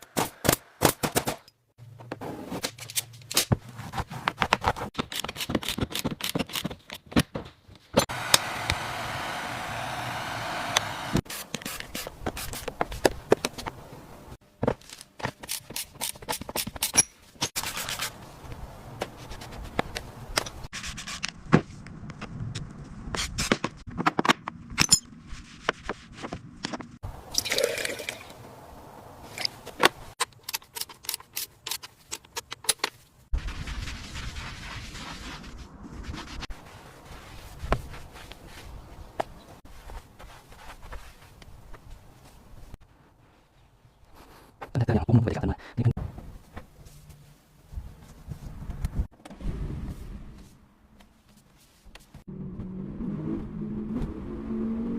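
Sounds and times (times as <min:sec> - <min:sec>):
tools clicking and knocking on metal: 0:29.4 - 0:33.0.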